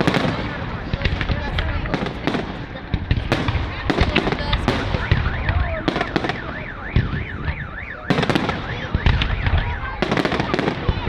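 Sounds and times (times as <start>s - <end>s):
fireworks bangs and crackles: 0.0s - 11.0s
car alarm wailing: 4.2s - 11.0s.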